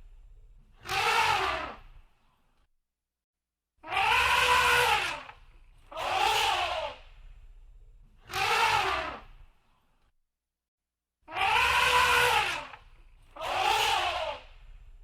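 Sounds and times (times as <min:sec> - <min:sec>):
baby animal crying: 0:00.8 - 0:01.8, 0:03.8 - 0:07.0, 0:08.3 - 0:09.2, 0:11.3 - 0:12.8, 0:13.4 - 0:14.5.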